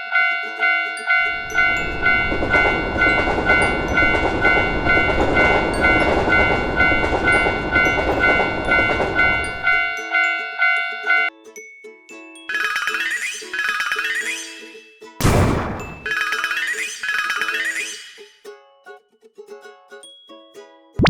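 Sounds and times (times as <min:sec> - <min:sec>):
railroad crossing bell ringing: 0:00.0 - 0:11.3, 0:12.5 - 0:14.9, 0:15.7 - 0:18.4
train rumble and rush: 0:01.2 - 0:10.0.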